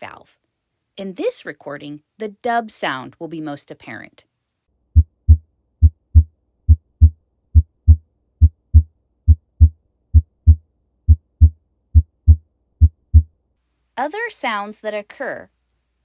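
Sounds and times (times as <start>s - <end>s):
heartbeat through stethoscope: 5.0s - 13.3s.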